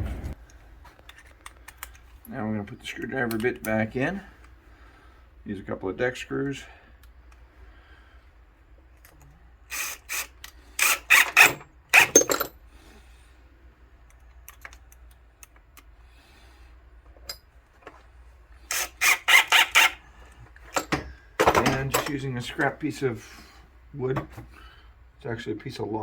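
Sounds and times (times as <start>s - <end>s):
impact driver driving screws: 9.7s - 12.3s, 18.7s - 20.0s.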